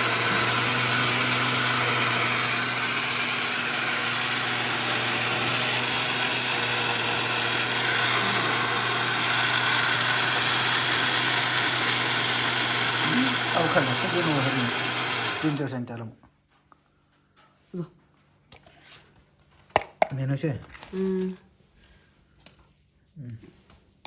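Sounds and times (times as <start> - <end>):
mixer grinder motor humming: 0.0 - 15.7.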